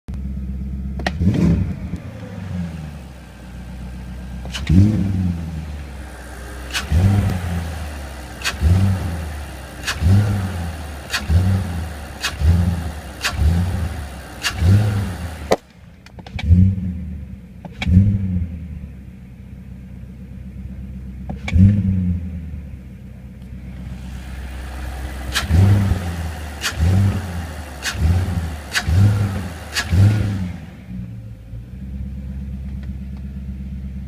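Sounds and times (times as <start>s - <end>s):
low sucking pulses: 1.2s - 15.5s, 23.6s - 31.3s
clicks: 4.4s - 5.1s, 6.7s - 7.5s, 8.4s - 8.9s, 27.8s - 30.1s.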